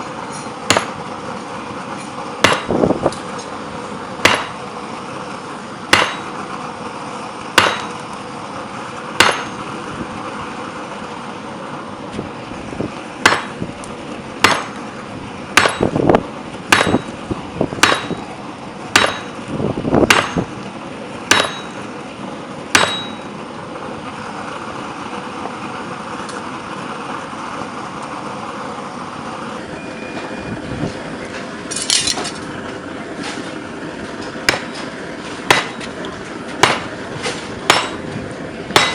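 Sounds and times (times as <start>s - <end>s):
steady background noise: 0.0s - 38.9s
hammer striking metal on anvil: 0.3s - 1.0s, 2.4s - 2.8s, 4.2s - 4.6s, 5.9s - 6.4s, 7.6s - 8.0s, 9.2s - 9.7s, 13.2s - 13.6s, 14.4s - 14.8s, 15.6s - 16.0s, 16.7s - 17.2s, 17.8s - 18.3s, 18.9s - 19.4s, 20.0s - 20.5s, 21.3s - 21.9s, 22.7s - 23.3s, 34.5s - 34.9s, 35.5s - 36.0s, 36.6s - 38.1s.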